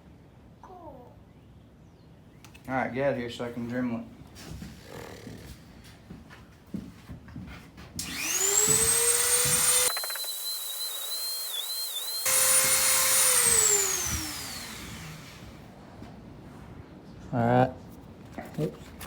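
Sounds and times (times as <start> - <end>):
rotary tool whining: 8.0 - 15.8.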